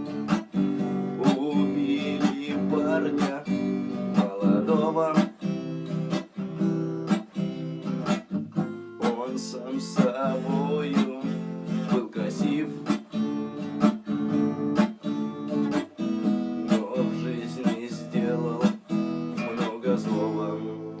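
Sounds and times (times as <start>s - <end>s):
guitar strumming: 0.0s - 21.0s.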